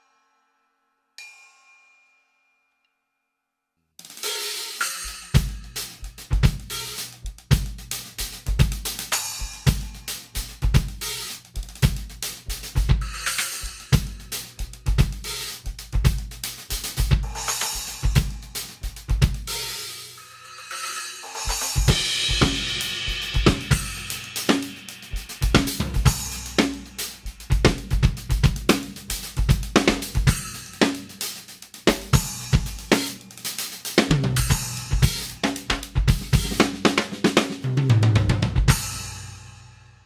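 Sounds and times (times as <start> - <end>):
drum kit groove: 4.0 - 39.7
cymbal ringing: 20.2 - 27.4
low tom strokes: 21.8 - 31.2.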